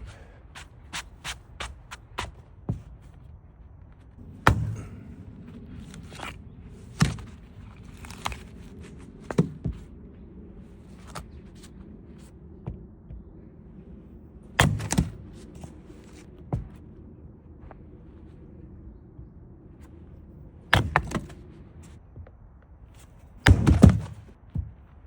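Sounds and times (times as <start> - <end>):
axe chopping wood thunks: 4.4 - 5.0, 14.6 - 15.3, 20.7 - 21.4, 23.4 - 24.8.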